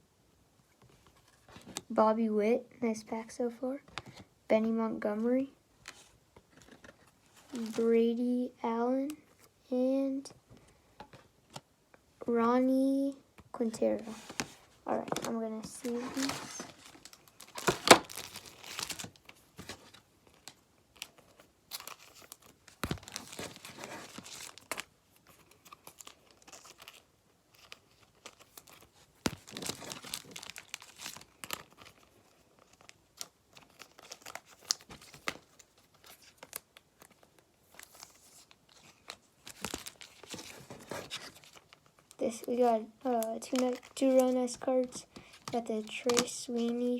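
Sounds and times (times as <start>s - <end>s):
plastic sleeves crinkling: 5.4s - 8.4s, 12.9s - 46.9s.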